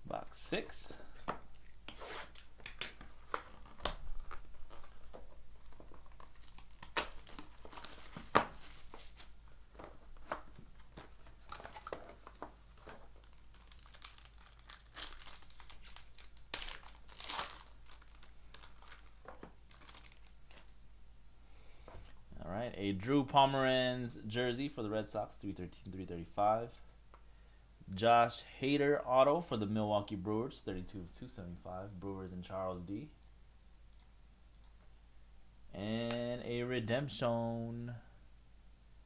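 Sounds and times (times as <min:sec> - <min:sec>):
plastic shrink-wrap crinkling and tearing: 0:03.2 - 0:09.4, 0:10.2 - 0:20.8.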